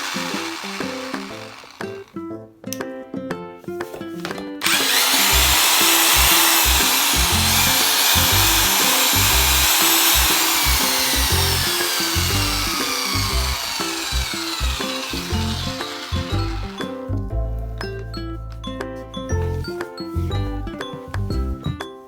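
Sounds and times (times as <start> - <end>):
power tool motor whine: 0.0 - 2.2, 4.6 - 16.9
background music: 0.0 - 22.0.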